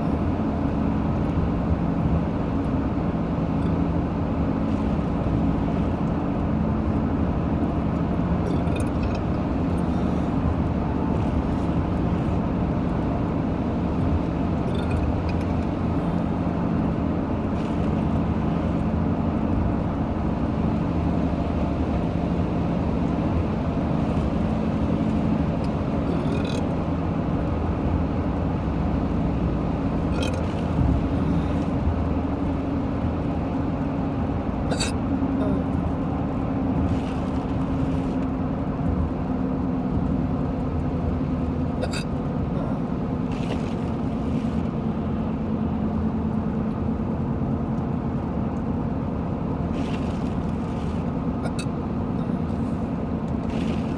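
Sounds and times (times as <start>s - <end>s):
road and engine noise inside car: 0.0s - 53.9s
person hiccuping: 34.7s - 35.7s, 41.8s - 42.0s, 51.4s - 51.6s.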